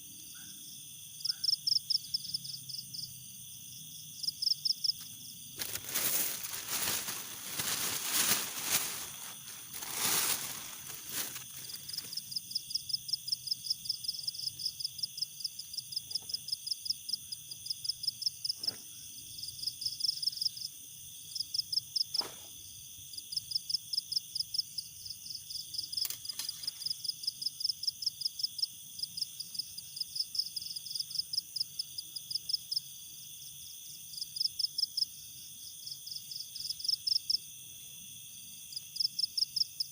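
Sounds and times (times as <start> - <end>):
crickets chirping: 0.0 - 39.9
rustling: 5.6 - 12.3.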